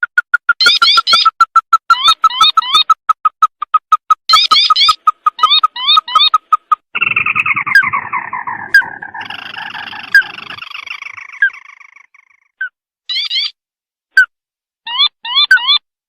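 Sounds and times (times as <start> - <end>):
harsh falling bird call: 4.3 - 12.4.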